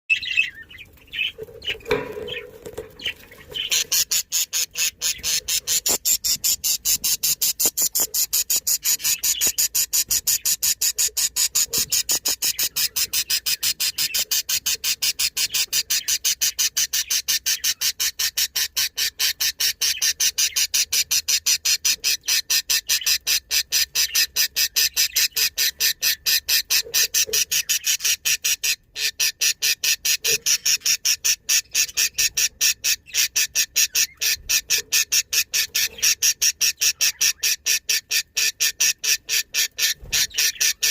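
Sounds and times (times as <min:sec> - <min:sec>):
budgerigar harsh rapid call: 0:03.0 - 0:40.9.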